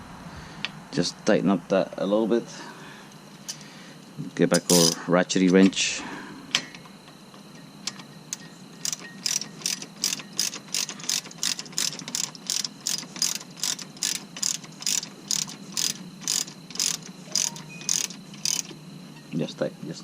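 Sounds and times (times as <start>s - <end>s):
ratchet wrench clicking: 4.6s - 5.0s, 7.8s - 18.8s.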